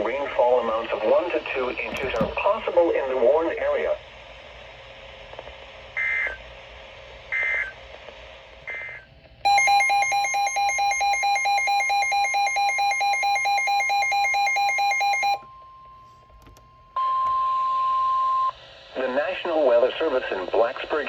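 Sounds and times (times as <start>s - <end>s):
rapid alert alarm beeps: 8.7s - 15.4s
steady alarm tone: 9.5s - 15.9s.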